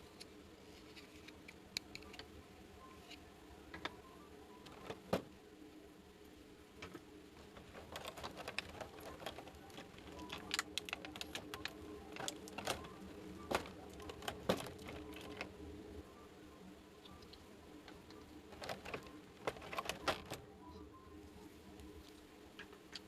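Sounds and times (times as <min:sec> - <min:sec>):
plastic toy pieces clicking: 0:07.8 - 0:12.8.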